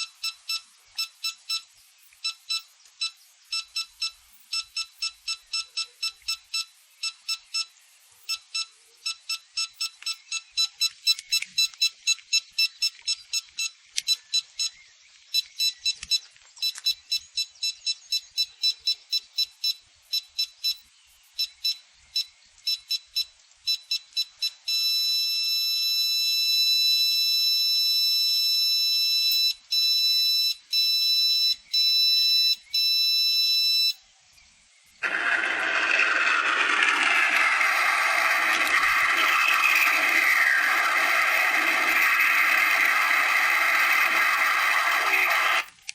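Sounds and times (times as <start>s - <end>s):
continuous high-pitched tone: 0.0s - 14.8s, 35.0s - 45.7s
short high beeps: 35.0s - 45.7s.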